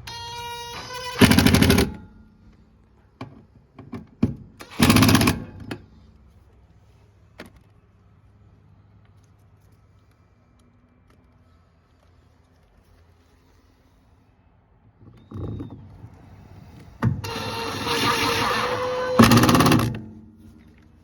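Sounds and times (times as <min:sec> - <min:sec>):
drill ratcheting: 0:01.0 - 0:02.0, 0:04.6 - 0:05.5, 0:17.2 - 0:20.1.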